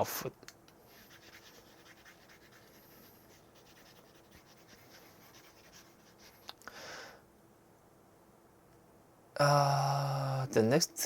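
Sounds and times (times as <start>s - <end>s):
pen scratching while writing: 0.9s - 6.4s.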